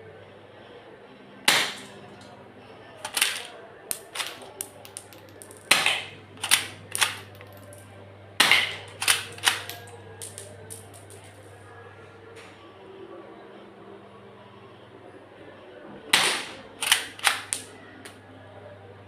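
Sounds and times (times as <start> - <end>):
pistol shots cracking: 1.5 - 1.9, 3.0 - 7.8, 8.4 - 11.4, 16.2 - 17.7
pistol clicks: 3.0 - 7.8, 8.4 - 11.4, 16.2 - 17.7.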